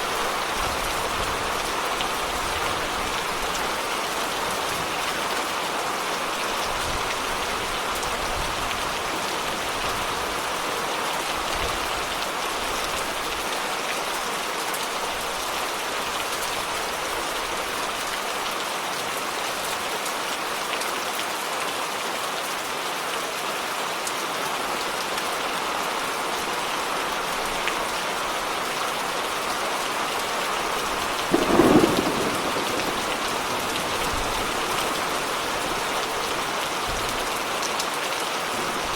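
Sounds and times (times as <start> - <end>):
heavy rain falling: 0.0 - 38.9
thunder clap: 31.3 - 35.0.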